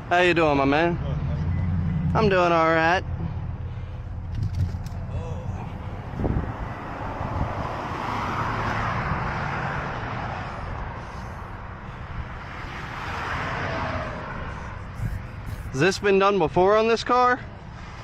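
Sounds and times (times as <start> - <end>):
vehicles passing: 0.0 - 18.0
low steady rumble: 0.9 - 7.5.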